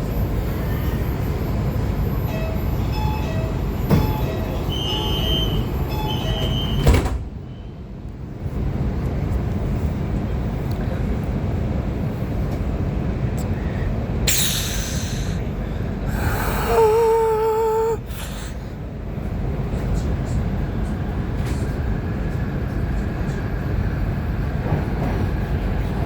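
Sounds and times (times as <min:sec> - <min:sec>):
train running noise: 0:00.0 - 0:26.0
door warning chime: 0:02.3 - 0:06.9
sliding doors shutting thump: 0:06.8 - 0:07.3.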